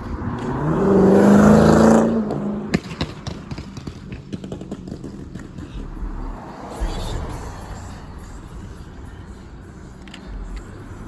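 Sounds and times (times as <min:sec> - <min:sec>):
road traffic noise: 0:00.0 - 0:11.0
footsteps on pavement: 0:02.3 - 0:11.0.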